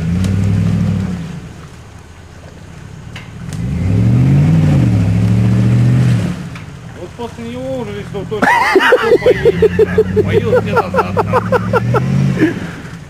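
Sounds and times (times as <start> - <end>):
car engine revving: 3.4 - 6.6, 8.8 - 12.8.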